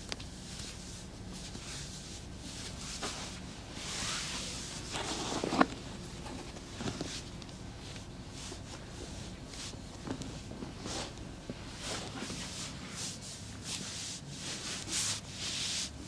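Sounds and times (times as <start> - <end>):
hands rustling over skin and clothing: 0.2 - 16.0.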